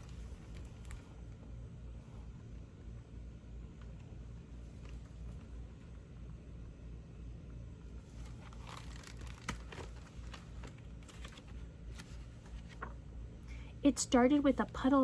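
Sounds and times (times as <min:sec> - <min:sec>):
book pages turning: 0:00.0 - 0:01.2, 0:08.0 - 0:13.1
low steady hum: 0:00.0 - 0:15.0.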